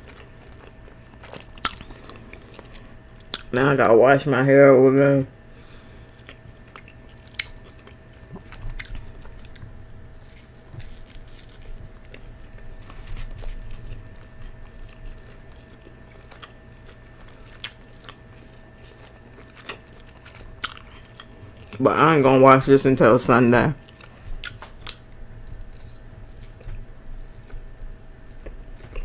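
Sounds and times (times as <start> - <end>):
chewing and biting food: 0.0 - 3.5, 6.0 - 22.4, 23.8 - 29.0
wet smacking clicks: 3.1 - 3.5, 24.4 - 25.0.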